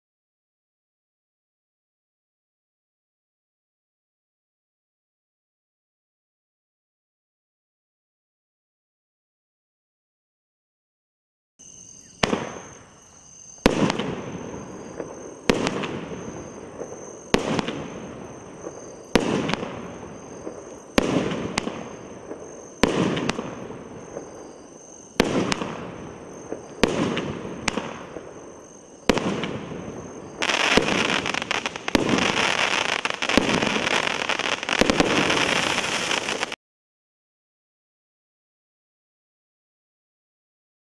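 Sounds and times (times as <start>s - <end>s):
firework bangs with sizzle: 12.2s - 13.0s, 13.6s - 36.6s
dense firework crackling: 13.6s - 36.6s.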